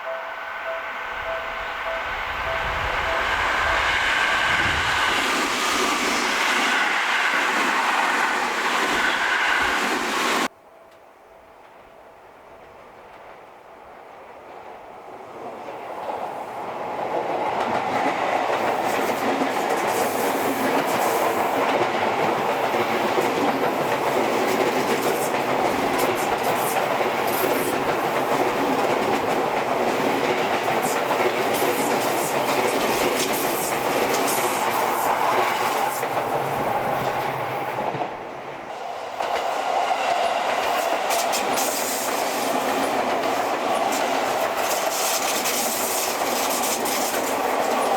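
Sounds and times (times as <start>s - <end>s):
train wheels rumbling on rails: 0.0s - 10.5s, 14.2s - 47.9s
wheels clicking over rail joints: 17.1s - 38.2s, 39.1s - 47.9s.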